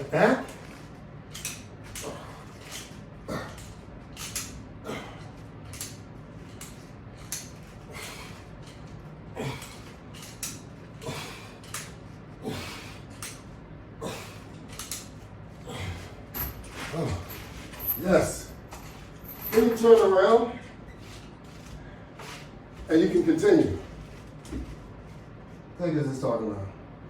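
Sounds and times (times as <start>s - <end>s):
person's forceful breaths: 2.0s - 3.8s, 4.8s - 5.5s, 7.7s - 10.2s, 10.8s - 14.8s, 15.5s - 17.9s, 20.6s - 22.9s.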